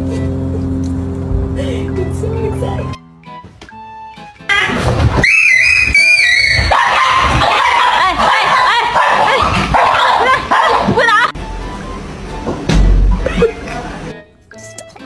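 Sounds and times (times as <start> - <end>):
animal high-pitched cries: 4.5 - 9.4.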